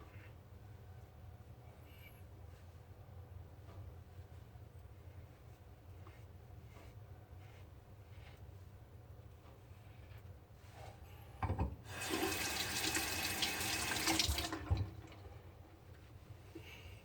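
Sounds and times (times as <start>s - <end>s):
water splashing into basin: 11.9s - 15.3s.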